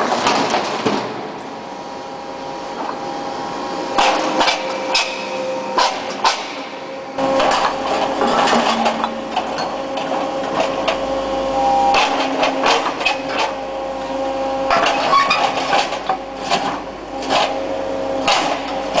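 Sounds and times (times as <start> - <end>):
steady machine hum: 1.6 - 19.0
clanking knocks and scraping: 7.2 - 11.2.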